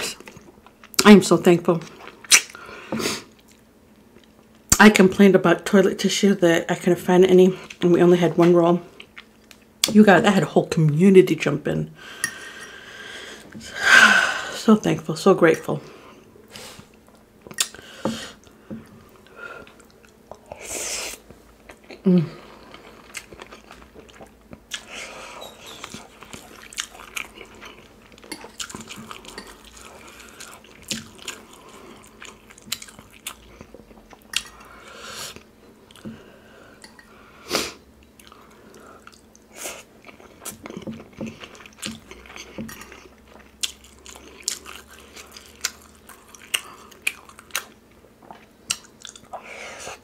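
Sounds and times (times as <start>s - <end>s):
wet mouth smacks: 2.3s - 2.6s
chewing and biting food: 22.6s - 36.1s, 38.2s - 49.4s.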